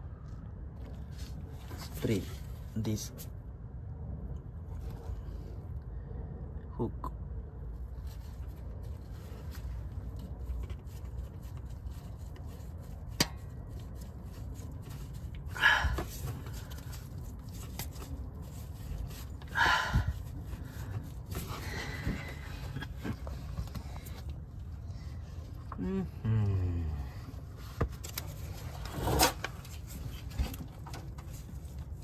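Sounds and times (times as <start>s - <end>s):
scraping rustles: 27.2s - 32.0s.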